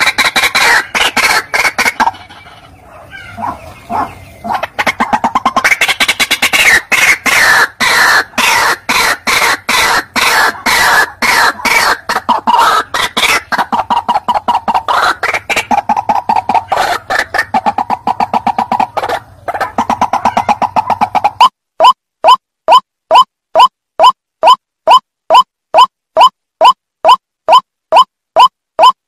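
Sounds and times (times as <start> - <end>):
waterhen calling: 0.0 - 21.5.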